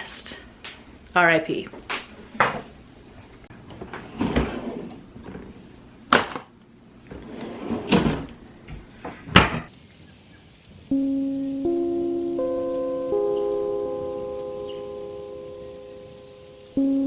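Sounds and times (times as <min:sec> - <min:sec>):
chiming music: 0:10.9 - 0:17.0.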